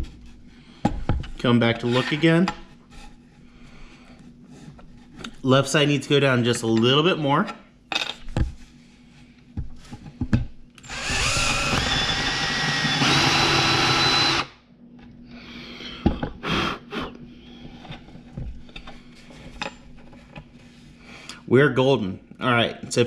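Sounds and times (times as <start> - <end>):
power drill boring into wood: 10.8 - 14.5.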